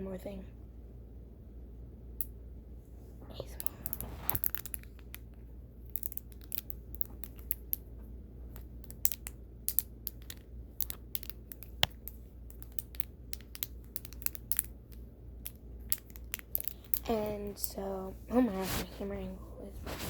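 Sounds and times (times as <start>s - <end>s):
plastic fidget links clicking: 3.6s - 5.3s, 5.9s - 7.9s, 8.5s - 17.8s.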